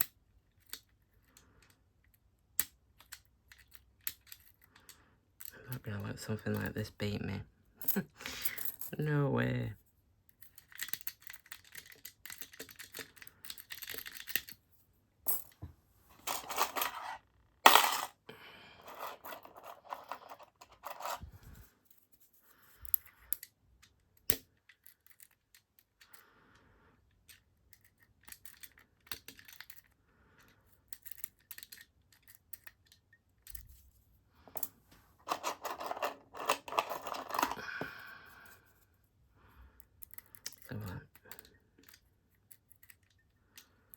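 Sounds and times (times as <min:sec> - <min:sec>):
lock picks scraping in padlock: 0:02.6 - 0:06.6, 0:10.3 - 0:14.6, 0:22.7 - 0:26.2, 0:27.1 - 0:33.7, 0:39.8 - 0:43.9.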